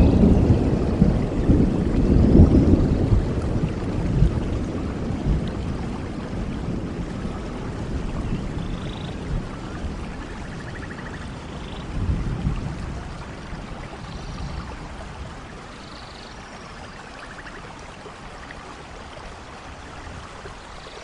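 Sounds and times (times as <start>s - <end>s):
thunder rumbling: 0.0s - 15.5s
steady rainfall: 0.0s - 21.0s.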